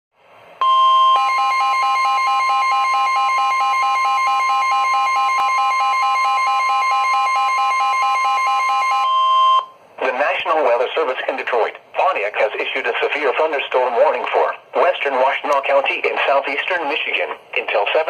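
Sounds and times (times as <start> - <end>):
steady electronic alarm tone: 0.6 - 9.8.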